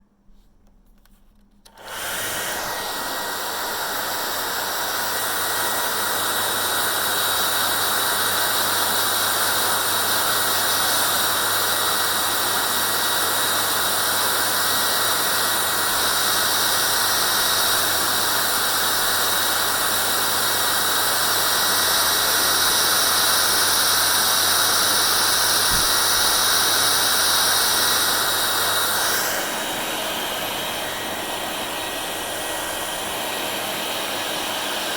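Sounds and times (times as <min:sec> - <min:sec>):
hair dryer running: 0:01.6 - 0:34.9.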